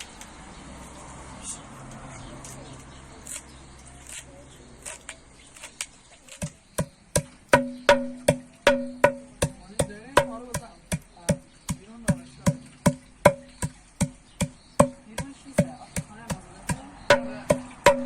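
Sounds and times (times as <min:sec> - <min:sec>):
hollow ringing knocks: 0:06.4 - 0:18.0.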